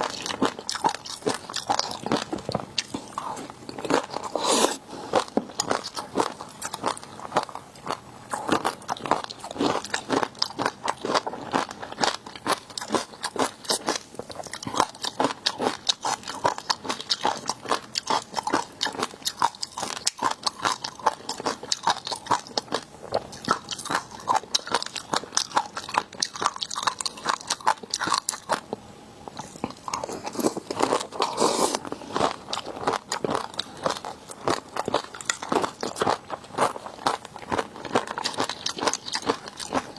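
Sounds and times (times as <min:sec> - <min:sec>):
crunching and chewing seafood: 0:00.0 - 0:39.9.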